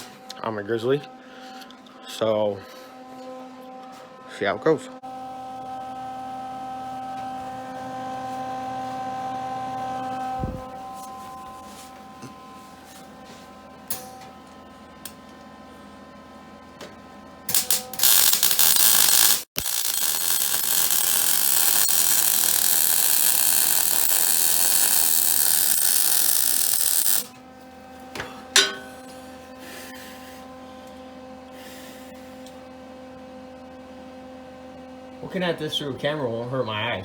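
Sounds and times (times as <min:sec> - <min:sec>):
steady hum: 0:05.1 - 0:37.0
arc welding crackle: 0:17.5 - 0:27.4.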